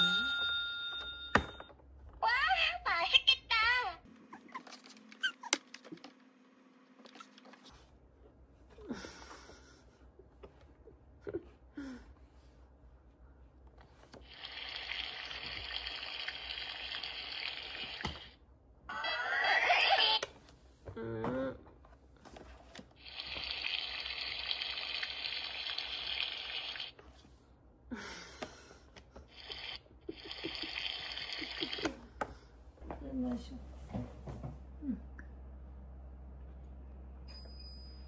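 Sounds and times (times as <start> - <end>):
water pouring into a container: 14.3 - 18.0, 23.0 - 27.0, 29.4 - 31.8.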